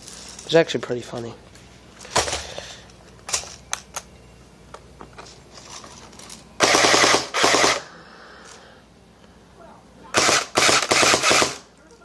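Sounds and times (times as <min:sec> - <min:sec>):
airsoft rifle bursts: 0:06.6 - 0:07.9, 0:10.1 - 0:11.7.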